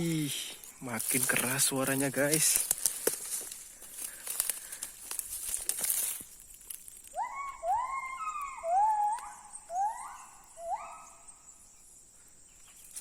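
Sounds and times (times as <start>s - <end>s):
gibbon whooping calls: 7.2s - 11.2s.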